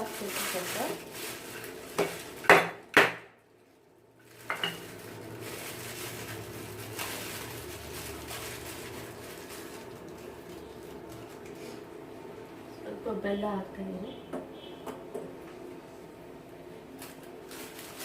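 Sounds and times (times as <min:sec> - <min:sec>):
pots and utensils clattering: 0:04.4 - 0:04.9.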